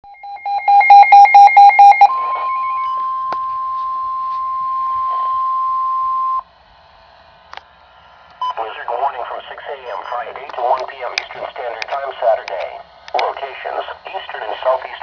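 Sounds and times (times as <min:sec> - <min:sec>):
rapid short beeps: 0:00.5 - 0:02.2.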